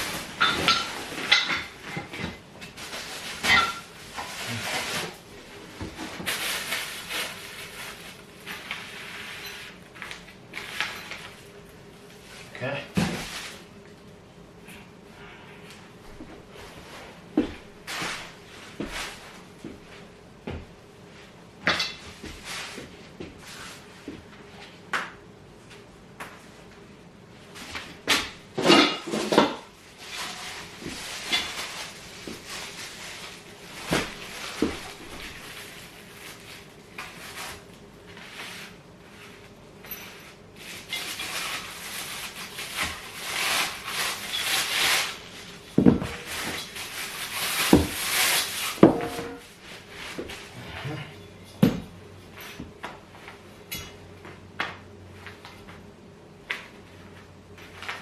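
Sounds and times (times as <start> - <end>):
rustling and scraping: 0.0 - 11.6, 12.2 - 13.7, 14.7 - 20.1, 21.1 - 24.8, 27.4 - 51.7
furniture parts knocking: 45.8 - 46.3, 48.8 - 49.4.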